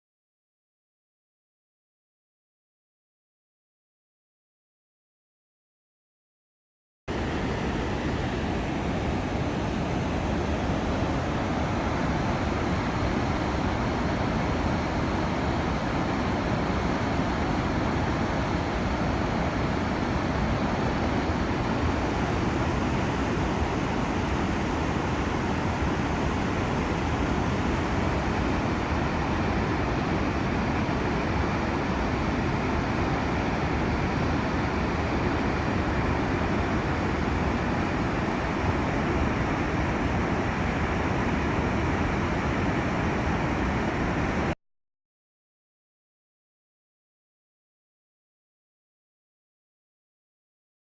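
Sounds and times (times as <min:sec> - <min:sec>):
dam water rushing: 0:07.1 - 0:44.5.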